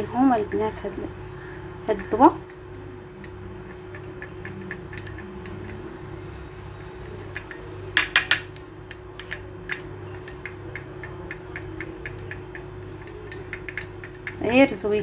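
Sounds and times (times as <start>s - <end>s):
spoon clinking against a bowl: 7.0s - 14.7s.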